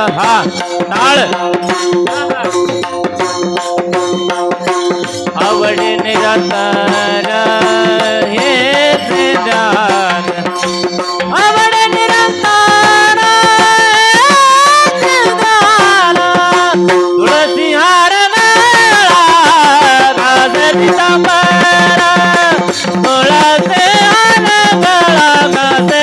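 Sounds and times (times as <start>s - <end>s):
tabla accompaniment: 0.0s - 26.0s
person singing long ornamented notes: 5.2s - 26.0s.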